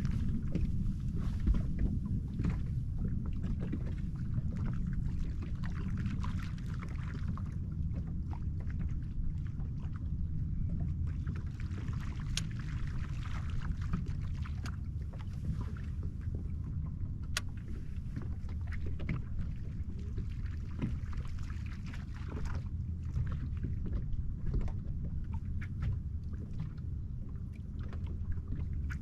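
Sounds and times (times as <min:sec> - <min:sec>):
boat engine low rumble: 0:00.0 - 0:29.0
water crackling against hull: 0:00.0 - 0:29.0.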